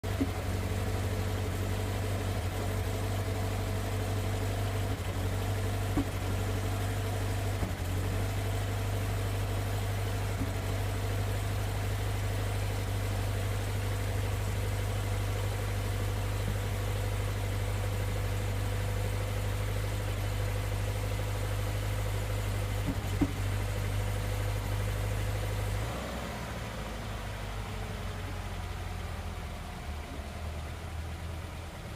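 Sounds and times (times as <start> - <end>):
car engine idling: 0.0 - 31.9.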